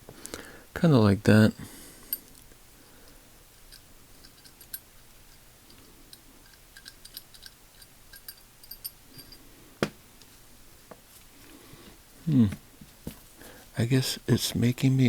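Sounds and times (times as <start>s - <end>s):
small steel ratchet parts clicking: 3.6s - 9.4s.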